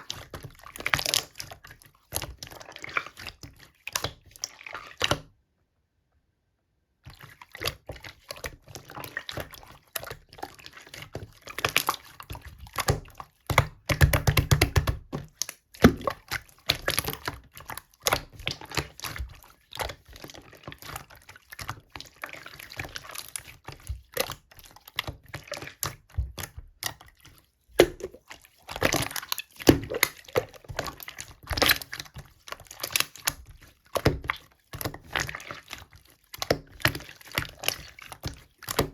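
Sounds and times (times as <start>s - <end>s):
hands squishing slime: 0.0s - 5.3s, 7.1s - 38.9s.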